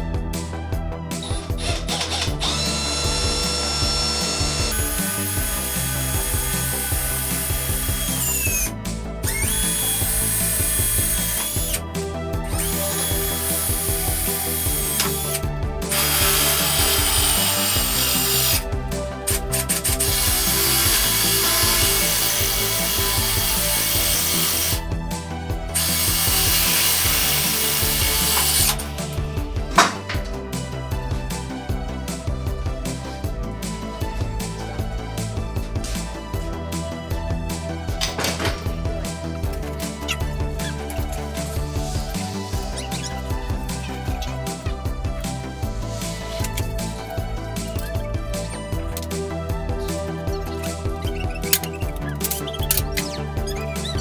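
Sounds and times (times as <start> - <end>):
music playing: 0.0 - 54.0
loud power tool: 1.6 - 24.9, 25.7 - 29.0.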